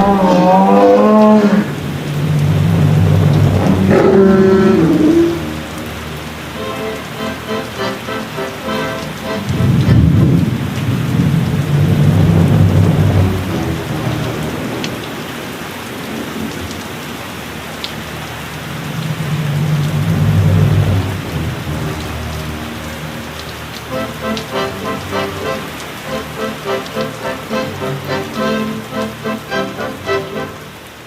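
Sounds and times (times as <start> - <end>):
thunder rolling: 0.0 - 5.7, 9.4 - 17.1, 18.0 - 22.3
steady rain: 0.0 - 31.0.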